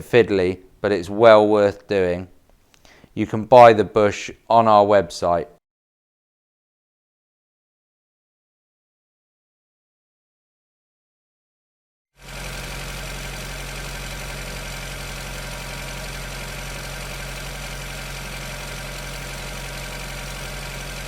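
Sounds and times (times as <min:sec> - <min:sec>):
engine idling: 0:12.2 - 0:21.0.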